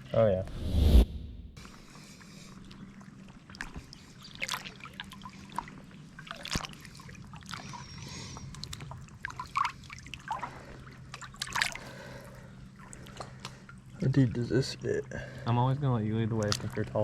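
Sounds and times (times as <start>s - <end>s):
light water trickle: 2.7s - 15.3s, 16.3s - 17.0s.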